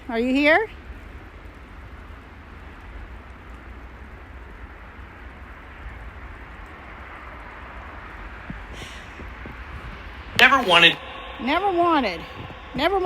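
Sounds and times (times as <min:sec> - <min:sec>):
radio static hiss: 0:10.4 - 0:11.1.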